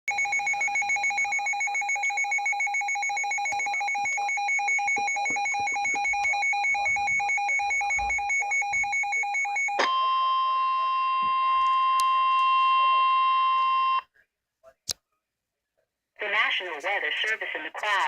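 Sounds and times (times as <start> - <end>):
rapid pulsing electronic alarm beep: 0.1 - 10.1.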